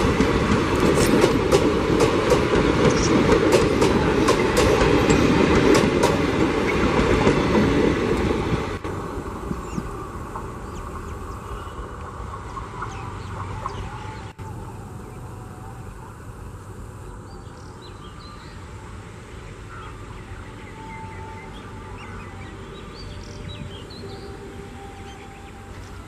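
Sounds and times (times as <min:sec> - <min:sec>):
train rumbling: 0:00.0 - 0:26.0.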